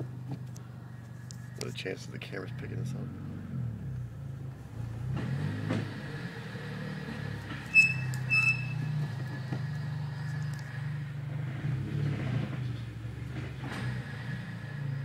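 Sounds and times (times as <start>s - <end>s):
car engine running: 3.7s - 15.0s.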